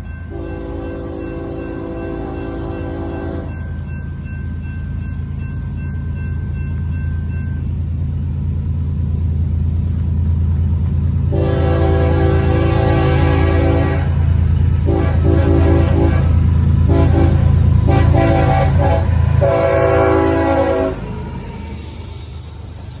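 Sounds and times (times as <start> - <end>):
train engine rumble: 0.0 - 23.0
multi-note train horn: 0.3 - 3.6, 11.2 - 21.4.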